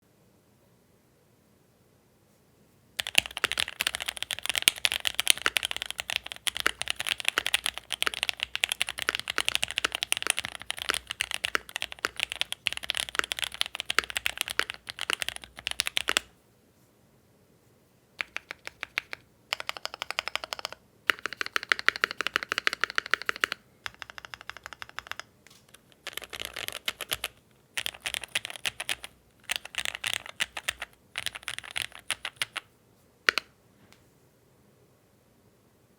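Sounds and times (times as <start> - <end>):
mechanical keyboard typing: 3.0 - 16.3, 18.2 - 32.7, 33.3 - 33.5.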